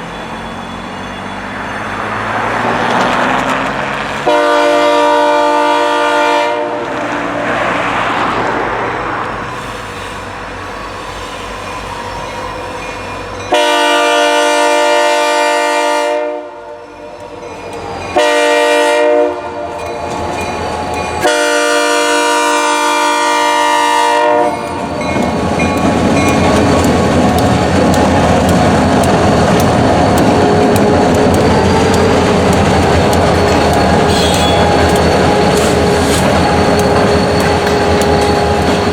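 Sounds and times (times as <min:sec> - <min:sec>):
train passing rumble: 0:00.0 - 0:38.9
train air horn blasts: 0:04.2 - 0:07.0, 0:13.5 - 0:17.1, 0:18.2 - 0:19.8, 0:21.2 - 0:25.1, 0:28.5 - 0:38.9.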